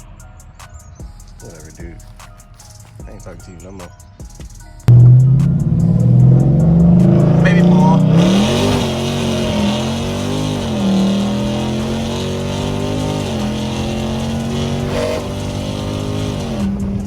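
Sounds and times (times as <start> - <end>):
car engine revving: 4.9 - 17.0.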